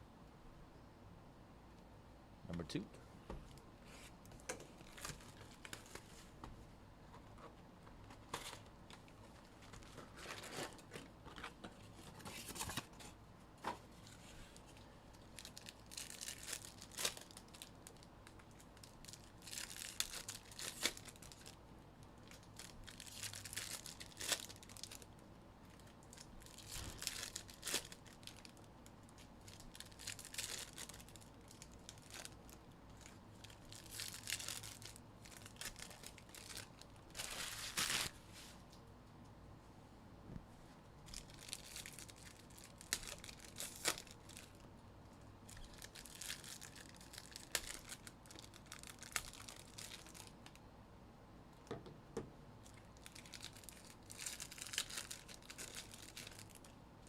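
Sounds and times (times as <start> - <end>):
wrappers tearing and crinkling: 4.3 - 6.0, 8.2 - 11.1, 14.5 - 21.6, 22.2 - 38.2, 41.1 - 44.6, 45.5 - 50.4, 52.7 - 56.7.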